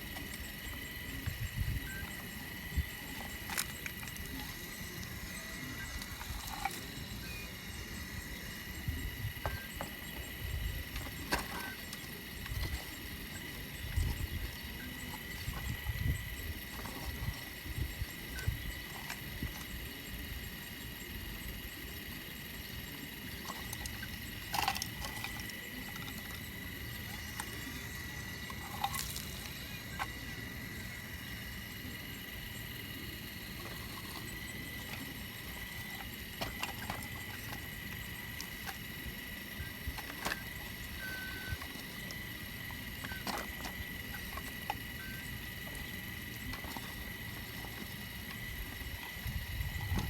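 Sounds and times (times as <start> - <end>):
high engine whine: 0.0 - 50.0.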